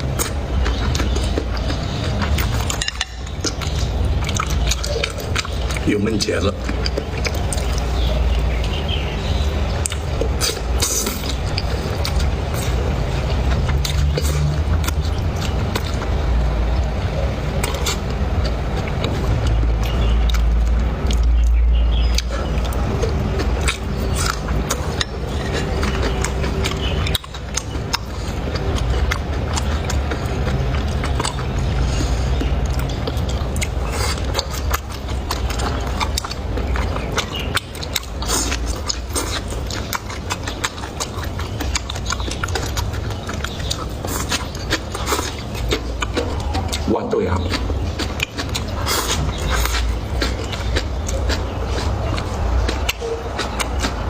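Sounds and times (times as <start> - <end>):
chewing: 0.0 - 54.0
steady low rumble: 0.0 - 54.0
utensils clicking against dishes: 0.7 - 5.8.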